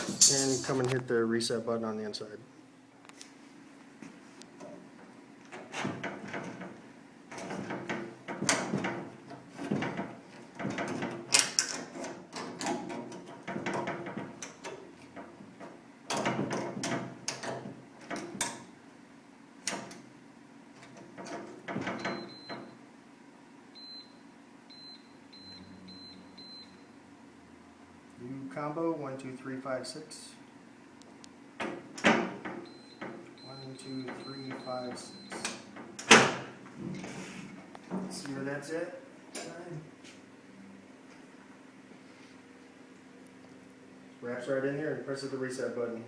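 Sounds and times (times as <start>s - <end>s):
metal strip scraping a steel door: 0.0s - 0.9s
keypad beeps: 32.7s - 35.4s.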